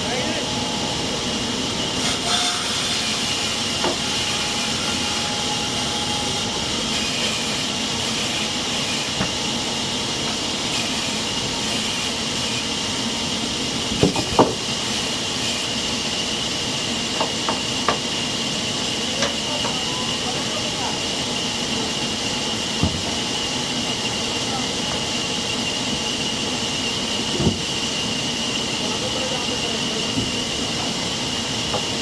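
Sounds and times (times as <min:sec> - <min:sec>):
sawmill machinery whining: 0:00.0 - 0:32.0
sharp knocks: 0:14.0 - 0:14.6.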